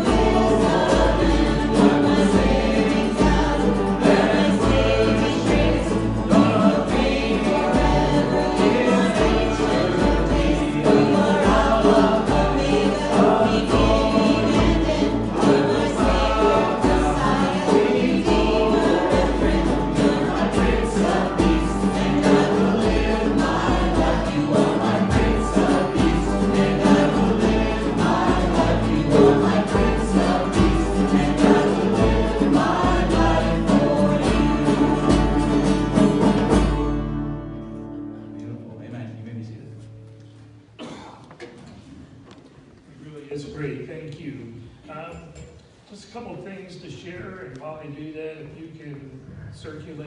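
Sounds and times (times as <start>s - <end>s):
band with drum beat: 0.0s - 37.4s
voices singing worship song: 0.0s - 37.5s.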